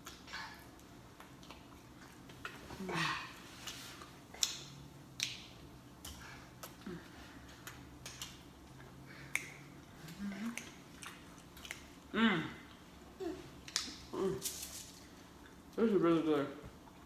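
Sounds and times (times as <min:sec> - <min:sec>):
wet lip smacks: 0:09.3 - 0:09.7, 0:10.5 - 0:11.9
person humming mm: 0:10.0 - 0:10.7, 0:12.1 - 0:12.6.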